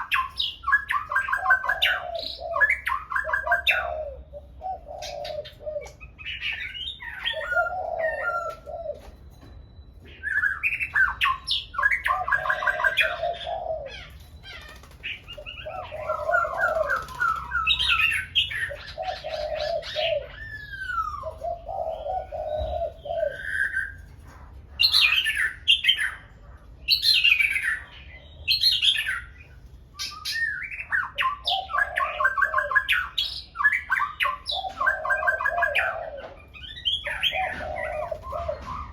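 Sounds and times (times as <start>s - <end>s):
birds singing: 0.0s - 38.9s
cooing notes: 0.9s - 9.2s, 11.8s - 15.0s, 15.6s - 24.1s, 33.8s - 38.9s.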